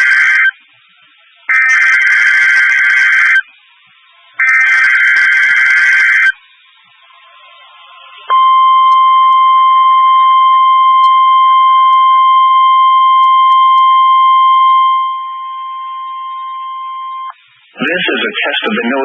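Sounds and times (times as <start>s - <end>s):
loud high-pitched warning beep: 1.5s - 3.5s, 4.4s - 6.4s, 8.3s - 17.4s.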